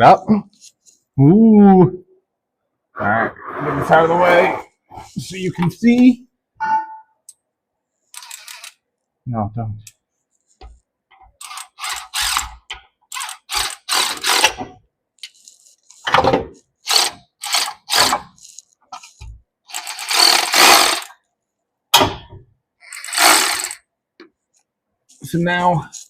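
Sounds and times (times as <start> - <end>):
mechanical tool bursts: 11.4 - 14.6, 16.9 - 18.6, 19.7 - 21.1, 22.9 - 23.8.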